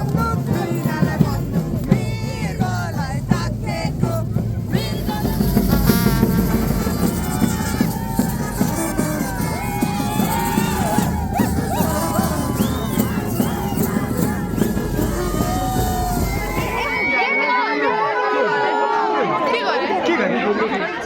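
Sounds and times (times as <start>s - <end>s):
song with singing and instruments: 0.0s - 17.5s.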